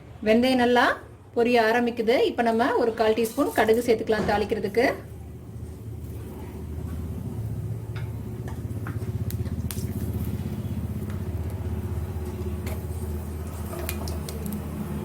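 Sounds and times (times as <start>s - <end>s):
steady low hum: 4.5s - 15.0s
seeds popping in hot oil: 7.9s - 15.0s.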